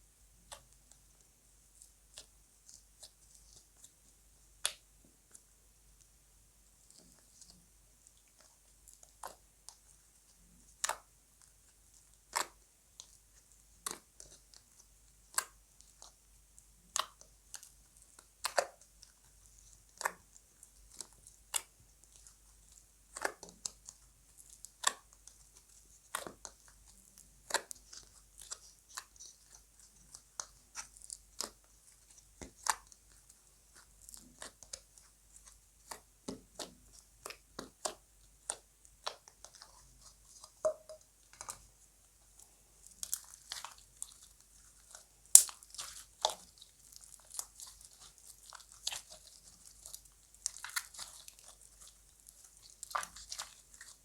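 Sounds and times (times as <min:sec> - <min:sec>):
slime popping and crackling: 0:16.8 - 0:41.7, 0:42.4 - 0:54.0.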